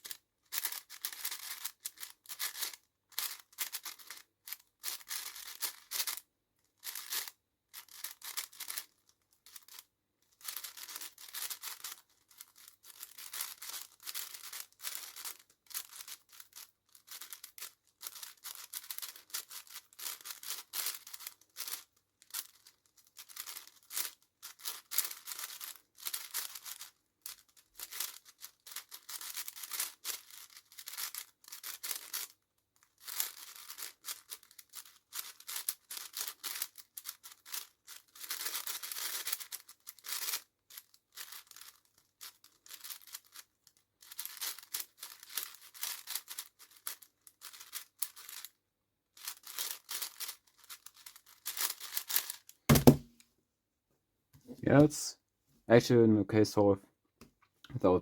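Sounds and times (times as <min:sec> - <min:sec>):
plastic puzzle cube clicking: 0:00.0 - 0:43.4.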